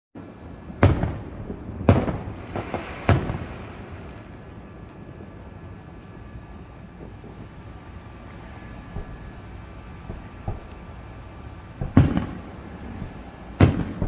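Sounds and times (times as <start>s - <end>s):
fireworks bangs: 0.2s - 14.0s
small firework pops: 0.8s - 5.0s, 7.0s - 14.0s.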